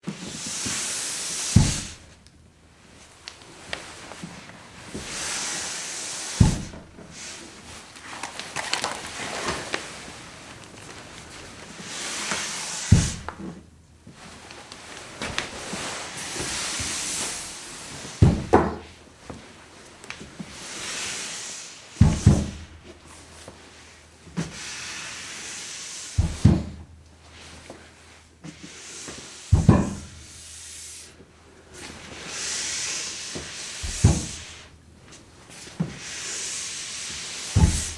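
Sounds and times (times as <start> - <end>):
object sliding with hissing scrape: 0.1 - 2.2, 3.9 - 8.0, 11.5 - 13.6, 14.8 - 18.3, 20.4 - 26.7, 27.3 - 34.8, 35.5 - 37.9
low thud: 29.5 - 30.2, 37.6 - 37.9.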